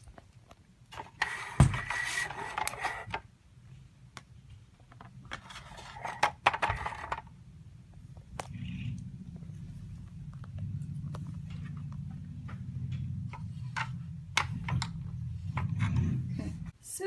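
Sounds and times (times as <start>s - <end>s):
plastic toy rustling and scraping: 0.9s - 3.2s, 4.9s - 7.3s.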